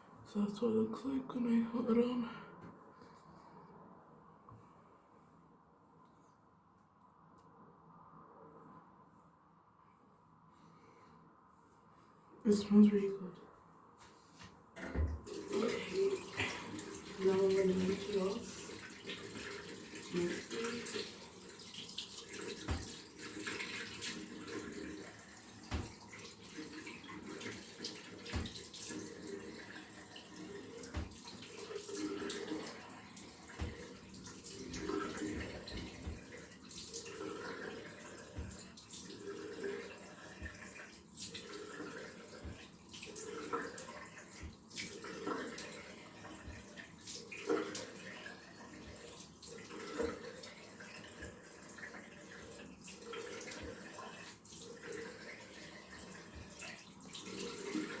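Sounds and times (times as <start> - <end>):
tap running into a sink: 14.8 - 37.4, 38.1 - 39.1, 40.3 - 41.6, 42.3 - 45.7, 52.9 - 54.2.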